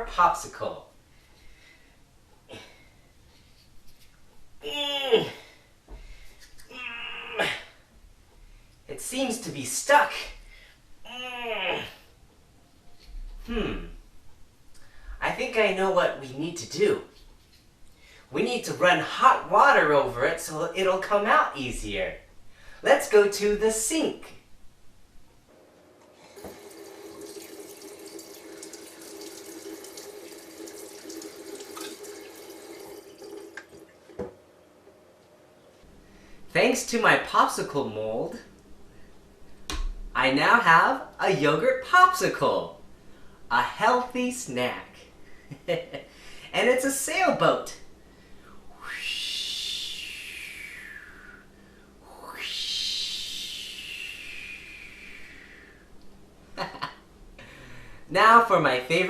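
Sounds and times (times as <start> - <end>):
low hum from tap: 26.0 - 34.5
tap water splashing into sink: 26.4 - 34.4
long breathy whistles: 48.3 - 55.9.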